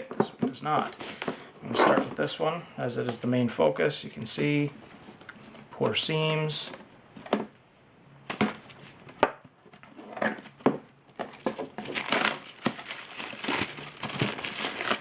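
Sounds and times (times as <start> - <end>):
cellophane wrap crinkling: 9.8 - 15.0.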